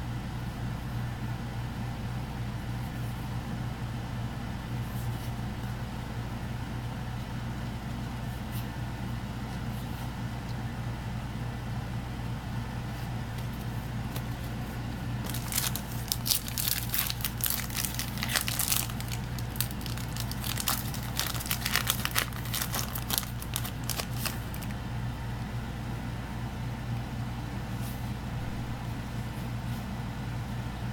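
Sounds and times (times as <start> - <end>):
steady low hum: 0.0 - 30.9
foil wrapper crinkling and tearing: 15.2 - 24.7.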